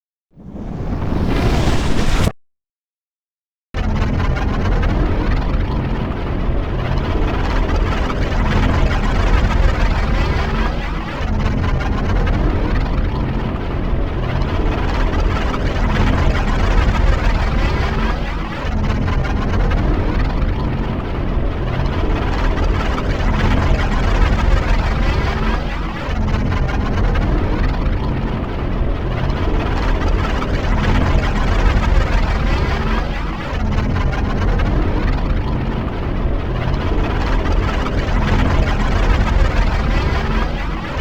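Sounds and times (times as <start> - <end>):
deep spaceship engine drone: 4.3 - 41.0.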